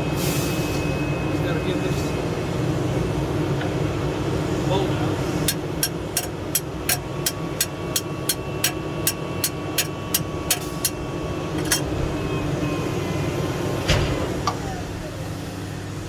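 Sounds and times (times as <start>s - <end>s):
low mechanical hum: 0.0s - 16.0s
sharp clicks: 5.5s - 11.0s, 11.6s - 11.8s.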